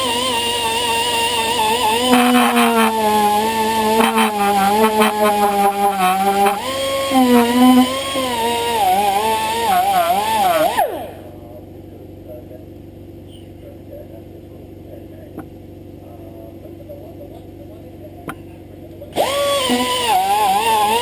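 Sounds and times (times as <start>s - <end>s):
air tool whining: 0.0s - 11.6s, 19.0s - 21.0s.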